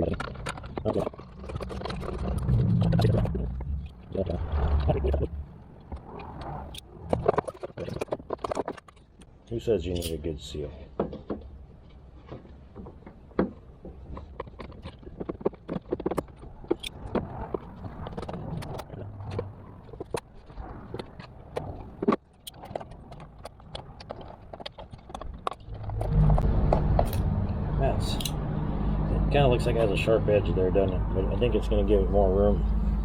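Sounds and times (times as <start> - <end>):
low steady hum: 25.5 - 33.0.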